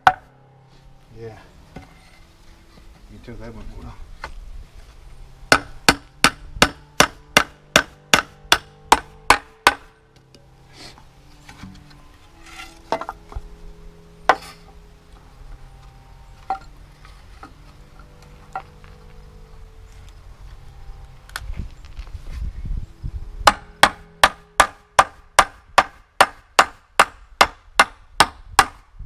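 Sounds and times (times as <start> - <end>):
hammer striking wood: 0.0 - 0.3, 5.5 - 9.9, 23.4 - 28.8.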